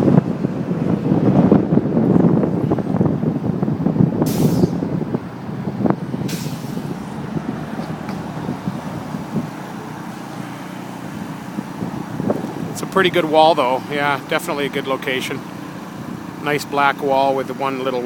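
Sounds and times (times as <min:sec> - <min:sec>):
street traffic rumble: 0:00.0 - 0:18.0
short hisses: 0:04.3 - 0:04.8, 0:06.3 - 0:07.0.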